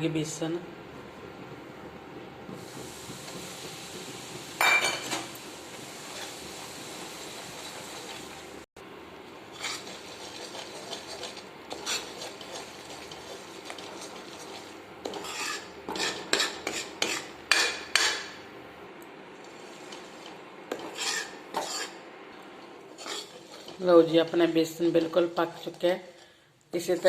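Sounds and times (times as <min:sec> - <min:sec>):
spoon scraping pan: 0:09.5 - 0:18.4, 0:19.4 - 0:27.0.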